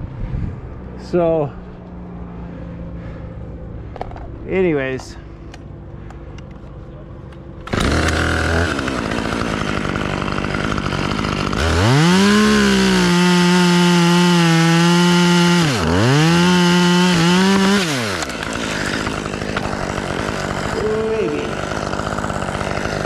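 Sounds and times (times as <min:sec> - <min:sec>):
chainsaw idling and cutting wood: 0:07.4 - 0:23.0.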